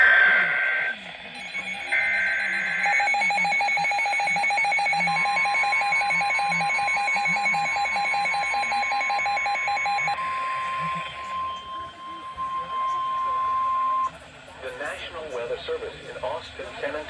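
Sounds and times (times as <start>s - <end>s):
pulsing two-tone alert signal: 0.0s - 14.1s
steady high tone: 0.0s - 14.1s
warbling digital header burst: 1.4s - 10.2s.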